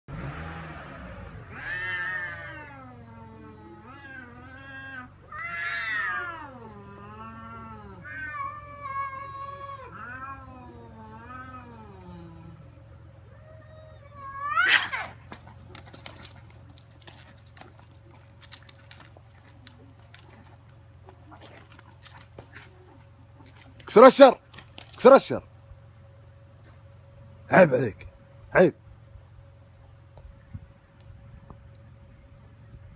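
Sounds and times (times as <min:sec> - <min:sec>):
cats yowling in a fight: 0:01.4 - 0:23.7
scuffling clicks and scrapes: 0:15.0 - 0:25.1.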